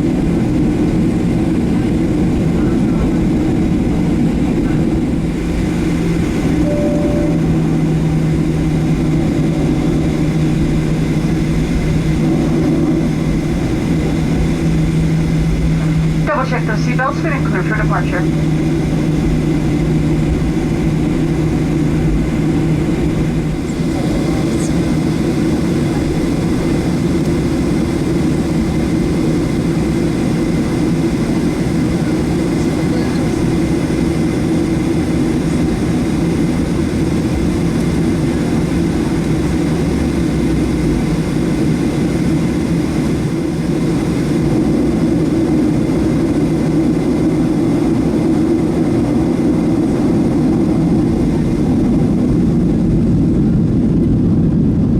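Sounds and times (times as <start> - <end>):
jet engine noise: 0.0 - 54.9
cabin hum: 15.8 - 18.6.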